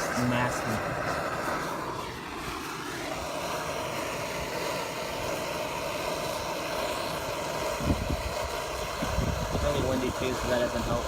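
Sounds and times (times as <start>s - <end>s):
torch flame hissing: 0.0s - 11.0s
wind rumbling on microphone: 7.7s - 11.0s.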